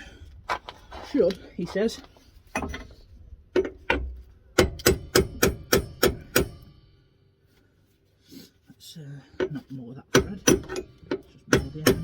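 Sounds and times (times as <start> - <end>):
hammer tapping on metal: 10.1 - 12.0.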